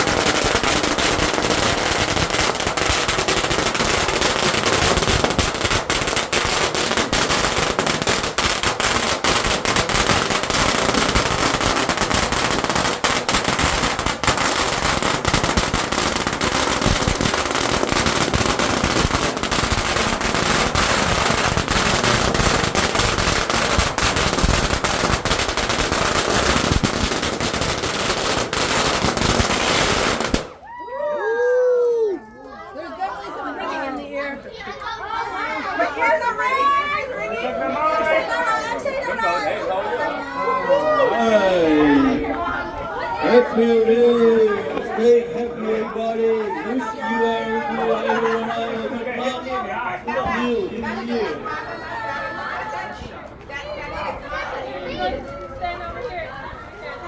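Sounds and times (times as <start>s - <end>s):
firecrackers crackling: 0.0s - 30.7s.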